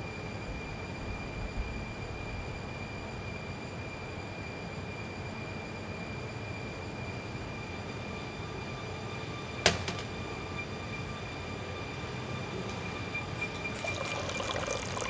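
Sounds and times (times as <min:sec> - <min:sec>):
faint high whine: 0:10.5 - 0:15.0.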